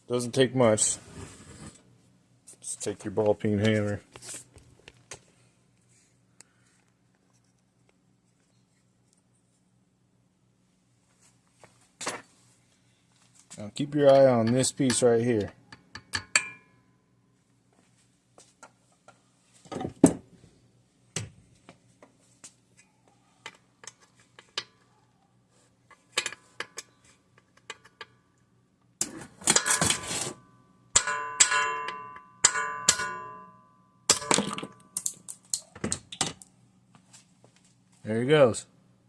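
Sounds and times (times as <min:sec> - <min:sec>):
hammer striking metal punch: 0:16.0 - 0:16.7, 0:31.0 - 0:33.5, 0:34.1 - 0:34.8.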